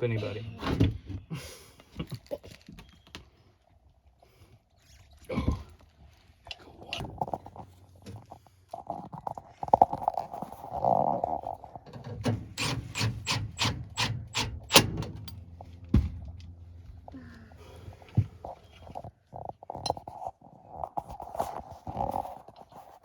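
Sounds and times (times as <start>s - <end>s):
metal pipe thunks: 12.0s - 16.4s
sharp tool clicks: 12.5s - 15.4s.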